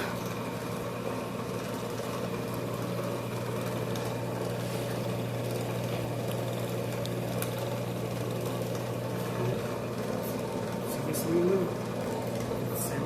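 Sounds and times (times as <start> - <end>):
brake lathe motor humming: 0.0 - 13.0.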